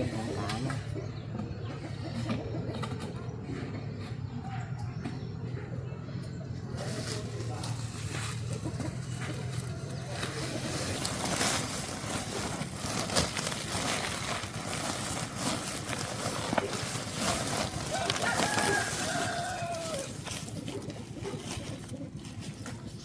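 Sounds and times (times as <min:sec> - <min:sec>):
rooster crowing: 0:17.9 - 0:20.3.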